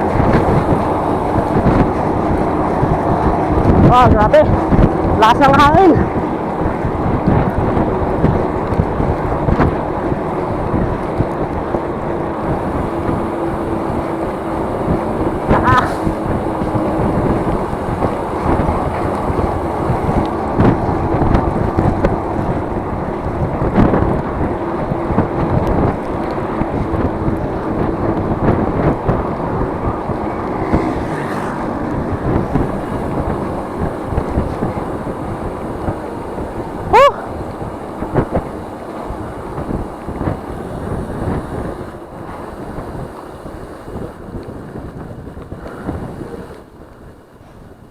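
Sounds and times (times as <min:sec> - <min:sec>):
wind buffeting microphone: 0:00.0 - 0:47.9.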